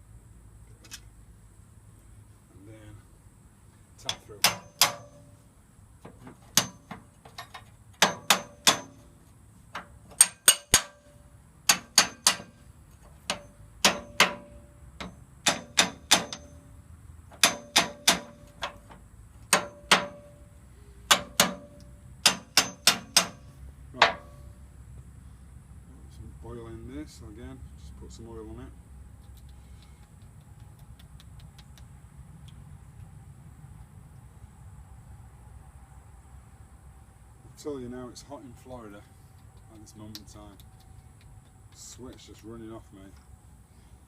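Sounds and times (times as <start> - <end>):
hammer tapping on metal: 4.0 - 5.3, 6.5 - 9.1, 10.1 - 11.1, 11.7 - 12.6, 13.2 - 16.7, 17.3 - 18.8, 19.5 - 20.4, 21.1 - 24.4.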